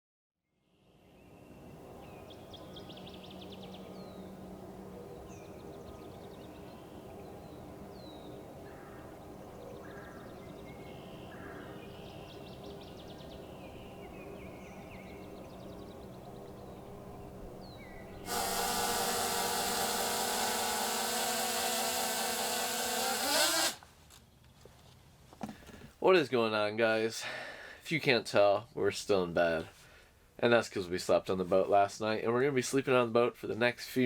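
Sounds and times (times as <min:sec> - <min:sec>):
birds chirping and trilling: 0:01.1 - 0:21.1
steady low hum: 0:01.2 - 0:23.8.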